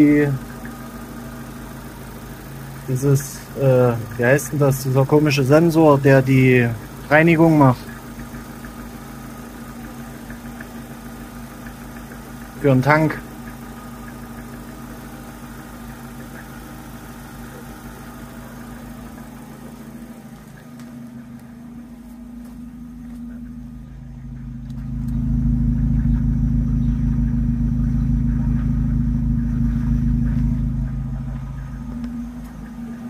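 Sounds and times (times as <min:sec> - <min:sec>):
light ticking: 0:00.0 - 0:21.6
car engine idling: 0:00.0 - 0:33.0.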